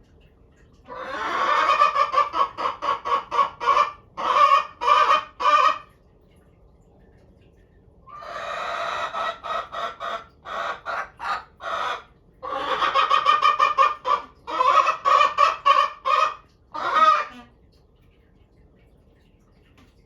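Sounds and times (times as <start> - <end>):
hens calling loudly: 0.9 - 5.8, 8.1 - 17.5.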